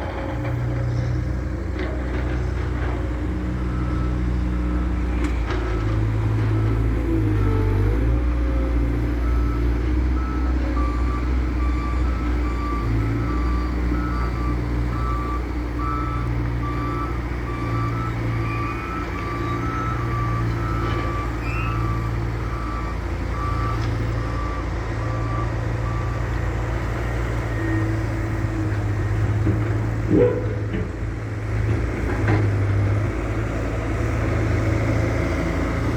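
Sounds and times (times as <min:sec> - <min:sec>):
diesel engine droning: 0:00.0 - 0:35.9
reversing alarm beeping: 0:09.1 - 0:28.7.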